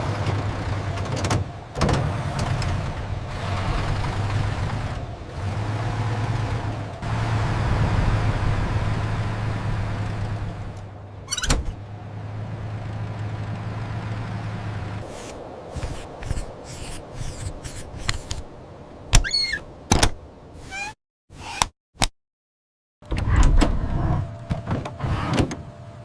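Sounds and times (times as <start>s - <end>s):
vehicle engine humming: 0.0s - 18.1s.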